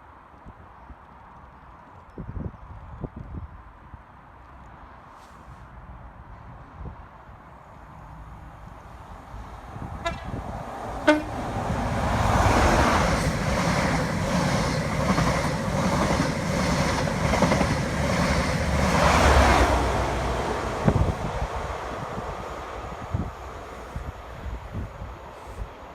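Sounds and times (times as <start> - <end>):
train passing rumble: 5.2 - 25.9
train horn blasts: 10.0 - 10.4, 11.0 - 11.4.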